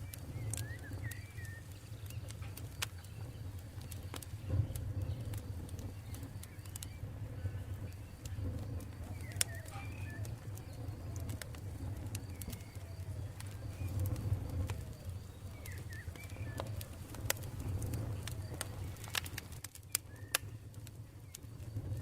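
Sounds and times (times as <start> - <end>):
campfire crackling and popping: 0.0 - 22.0
low steady rumble: 0.0 - 22.0
faint bird calls: 0.1 - 20.7.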